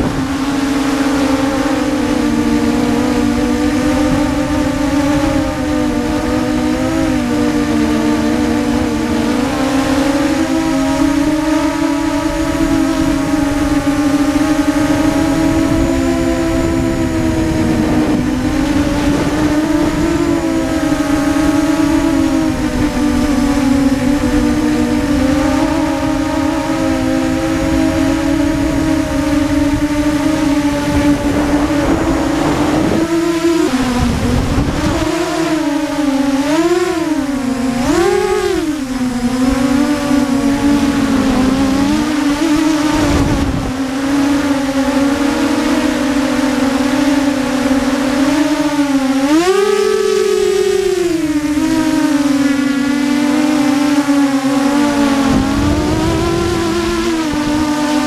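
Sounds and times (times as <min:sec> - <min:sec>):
quadcopter motors buzzing: 0:00.0 - 0:58.0
wind noise: 0:00.0 - 0:58.0.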